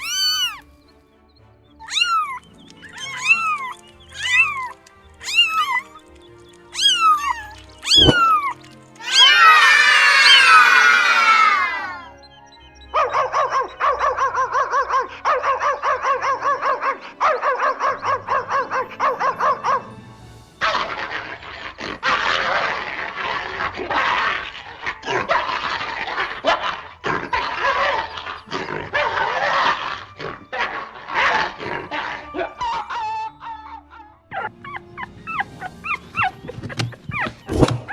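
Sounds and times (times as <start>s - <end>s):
animal calling: 0.0s - 0.7s, 1.8s - 12.2s, 20.6s - 37.9s
music: 0.0s - 37.9s.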